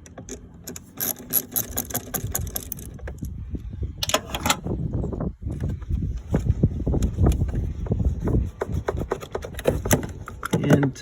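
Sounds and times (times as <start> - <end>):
battery terminal rubbing and knocking: 0.0 - 3.4, 5.4 - 11.0.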